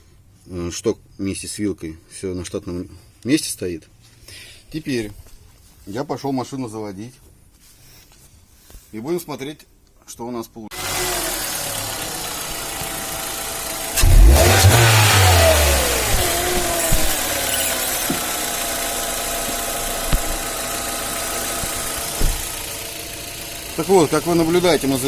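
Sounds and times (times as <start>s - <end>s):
car engine starting and idling: 10.8s - 25.0s.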